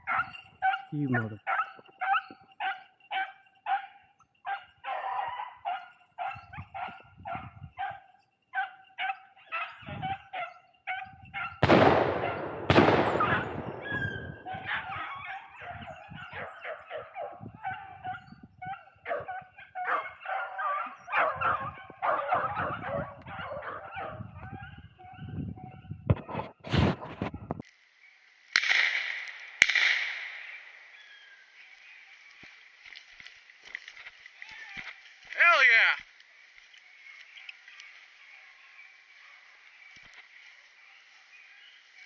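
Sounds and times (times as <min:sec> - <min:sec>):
hound pack baying and yelping: 0:00.0 - 0:27.5, 0:30.8 - 0:35.9
shotgun shots: 0:11.6 - 0:14.9.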